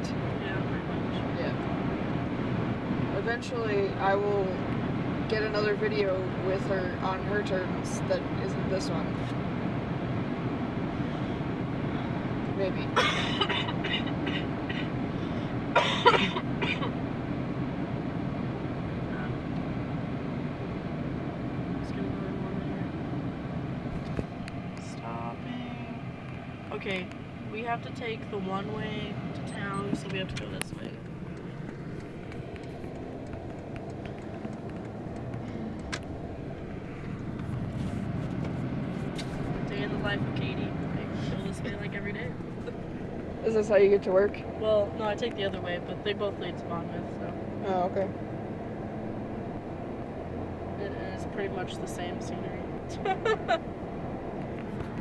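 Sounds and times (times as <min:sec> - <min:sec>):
car road noise from cabin: 0:00.0 - 0:55.0
person coughing: 0:13.0 - 0:14.9, 0:15.8 - 0:16.9.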